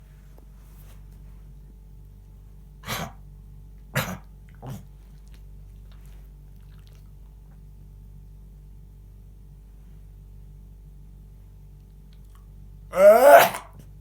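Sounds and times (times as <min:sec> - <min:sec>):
short coughs: 0:04.0 - 0:04.3.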